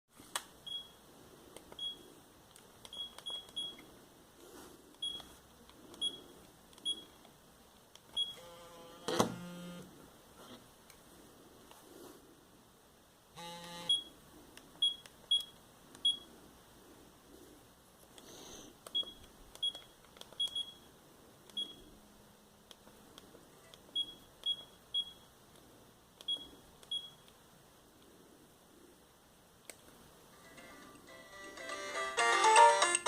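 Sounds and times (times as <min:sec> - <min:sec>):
phone keypad beeps: 0:01.8 - 0:02.0, 0:02.9 - 0:03.8, 0:05.0 - 0:05.3, 0:13.4 - 0:14.1, 0:18.9 - 0:20.8, 0:21.5 - 0:21.8, 0:26.2 - 0:27.2.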